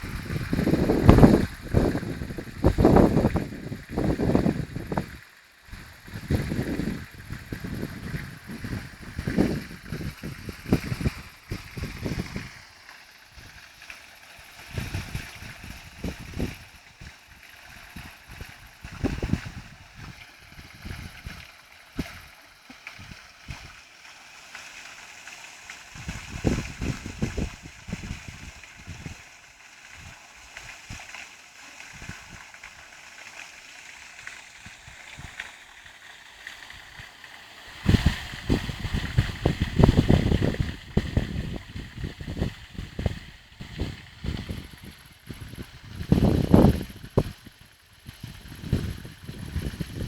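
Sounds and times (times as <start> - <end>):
wind buffeting microphone: 0.0 - 12.6, 14.7 - 17.1, 17.9 - 21.4, 26.0 - 29.2, 37.8 - 50.0.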